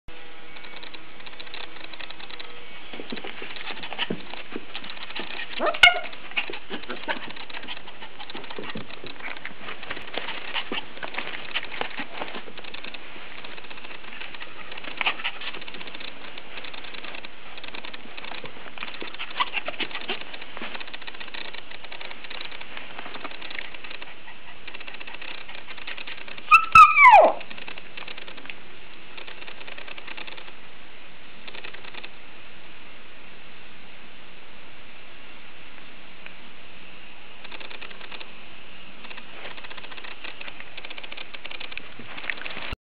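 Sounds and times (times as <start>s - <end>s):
faint clicks: 0.6s - 26.5s
puppy yawning with squeaky whine: 5.6s - 6.2s, 26.5s - 27.5s.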